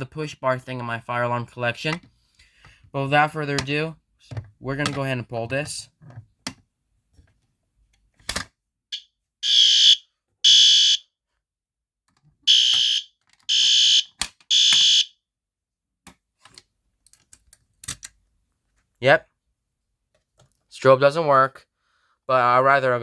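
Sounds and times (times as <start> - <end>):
fire alarm horn blasts: 8.9 - 11.0, 12.5 - 15.2.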